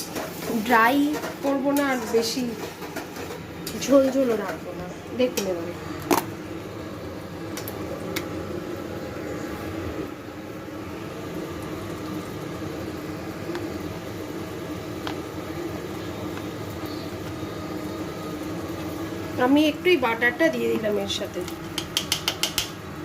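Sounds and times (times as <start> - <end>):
fan or motor humming: 0.0 - 23.0
spatula clicking against pan: 21.4 - 22.8.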